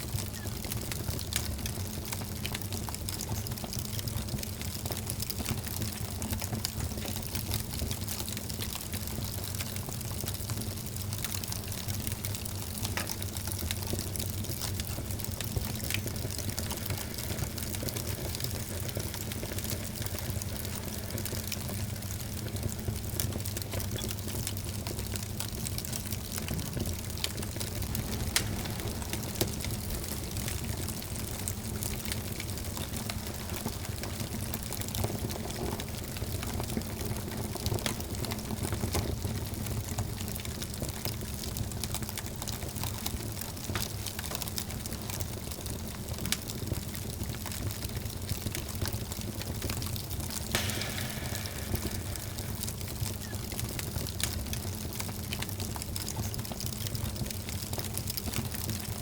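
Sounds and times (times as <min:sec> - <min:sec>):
wood fire crackling: 0:00.0 - 0:59.0.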